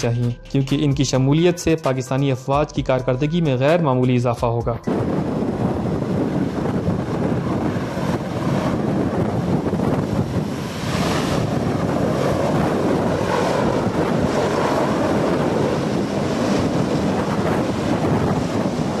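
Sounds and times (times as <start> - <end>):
helicopter rotors and engines: 4.8 - 19.0
wind buffeting microphone: 4.8 - 19.0.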